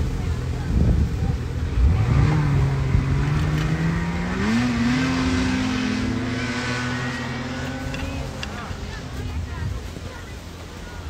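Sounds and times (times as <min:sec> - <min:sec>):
engine revving up: 0:01.6 - 0:09.2.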